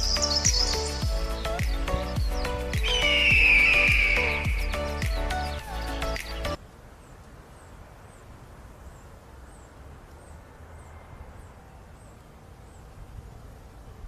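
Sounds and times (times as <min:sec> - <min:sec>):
faint high chirp: 0:00.0 - 0:06.6
music: 0:00.0 - 0:06.6.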